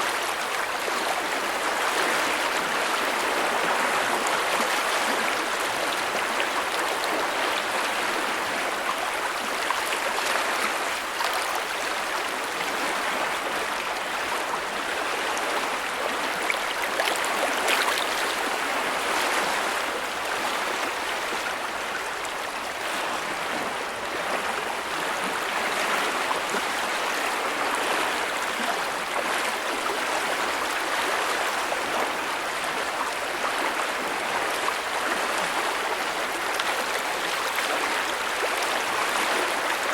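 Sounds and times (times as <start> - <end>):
creek water rushing: 0.0 - 39.9
small water splashes: 15.0 - 21.4.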